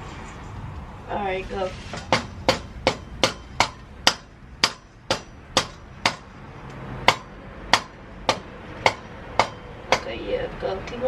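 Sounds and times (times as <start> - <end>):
rubber mallet striking axle: 2.0 - 6.4, 7.0 - 10.2.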